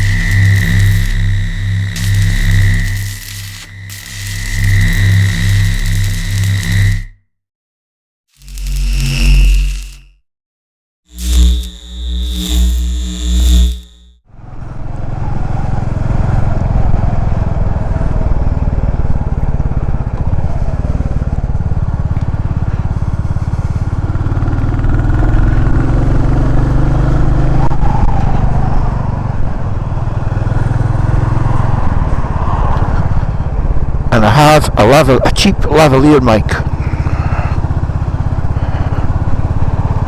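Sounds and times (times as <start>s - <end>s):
motorcycle engine: 0.0s - 7.2s, 11.1s - 32.5s, 36.6s - 40.0s
wind and road noise: 14.3s - 34.2s, 36.6s - 40.0s.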